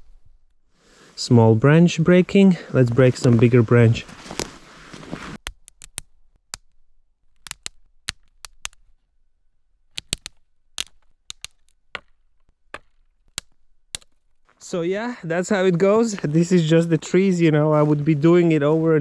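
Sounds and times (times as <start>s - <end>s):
wood cracking and snapping: 0.0s - 0.7s, 4.2s - 14.6s
rustling branch: 2.8s - 8.4s.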